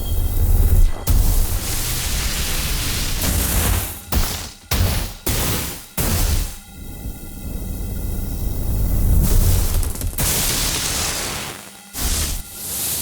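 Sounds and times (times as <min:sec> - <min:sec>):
buzzing electric hum: 0:00.0 - 0:13.0
sharp electric zaps: 0:00.8 - 0:06.6, 0:09.2 - 0:13.0
electric noise burst: 0:09.2 - 0:13.0.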